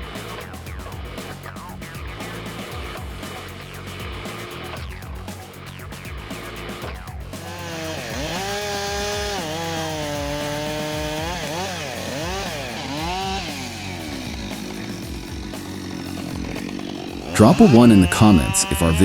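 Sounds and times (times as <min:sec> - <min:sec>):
chainsaw cutting wood: 0:00.0 - 0:19.0.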